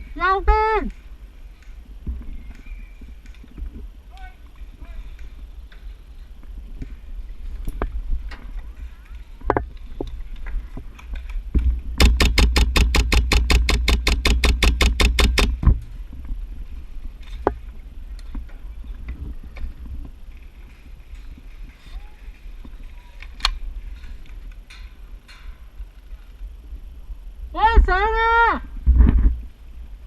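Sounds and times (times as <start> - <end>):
wind rumble: 0.0 - 30.0
airsoft gun firing full auto: 12.0 - 15.6.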